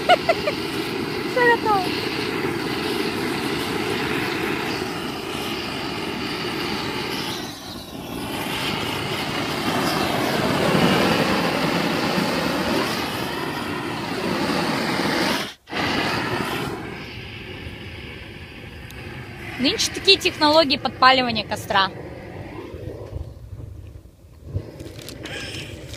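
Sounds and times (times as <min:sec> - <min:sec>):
powered blower running: 0:00.0 - 0:16.8.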